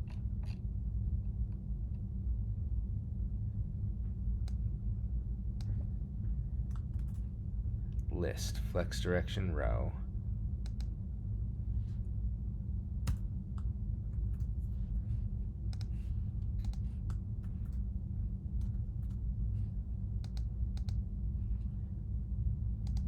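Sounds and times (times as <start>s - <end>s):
low background hum: 0.0s - 23.0s
computer keystrokes and clicks: 6.7s - 7.2s, 10.6s - 10.9s, 15.7s - 17.8s, 20.2s - 21.0s.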